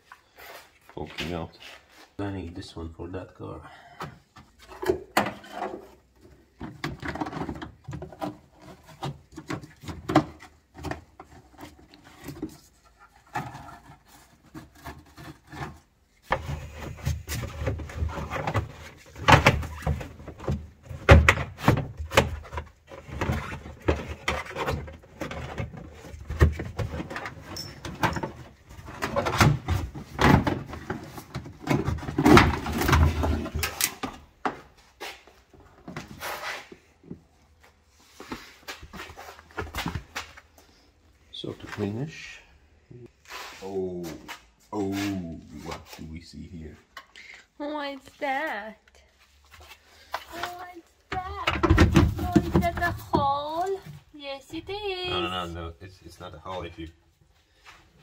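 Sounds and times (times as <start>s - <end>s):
car parts knocking and rubbing: 50.5s - 53.6s.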